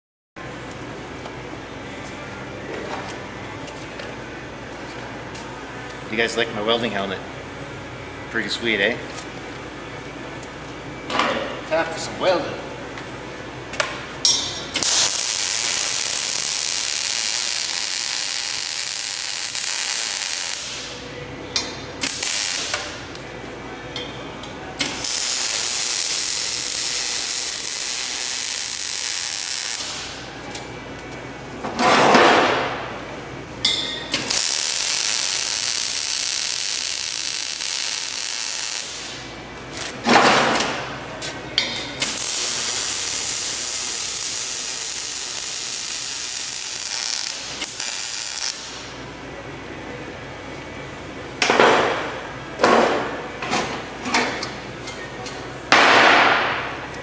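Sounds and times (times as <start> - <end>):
arc welding hiss: 14.8 - 21.0, 22.0 - 23.0, 24.8 - 30.2, 34.2 - 39.2, 42.0 - 48.9.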